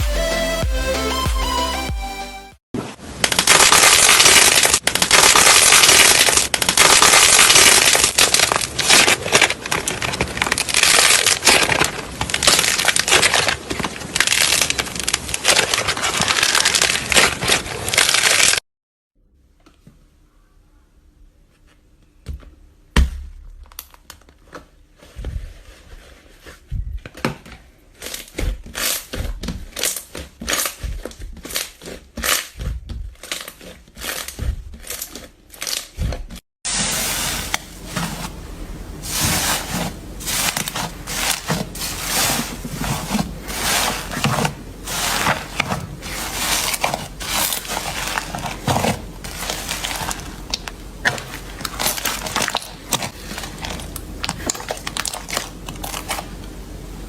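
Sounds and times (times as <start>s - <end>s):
steady low hum: 36.7s - 57.0s.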